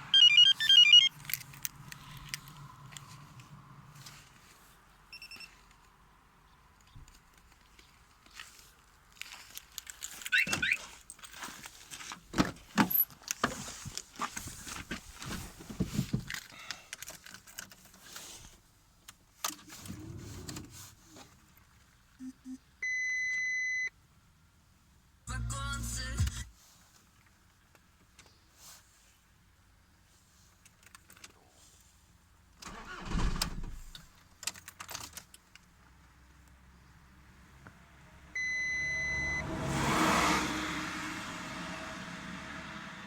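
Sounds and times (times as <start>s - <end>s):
high electronic chirps: 0.1s - 1.1s.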